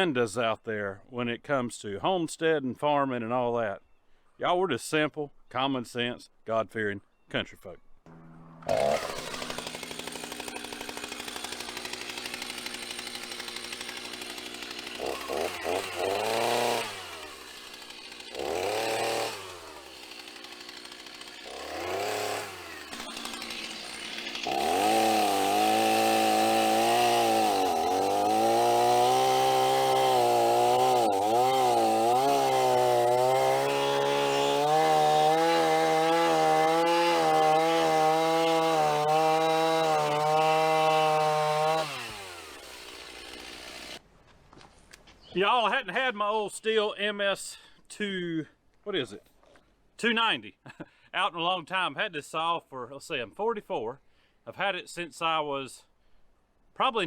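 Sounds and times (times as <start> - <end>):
chainsaw revving and cutting wood: 8.1 - 44.0.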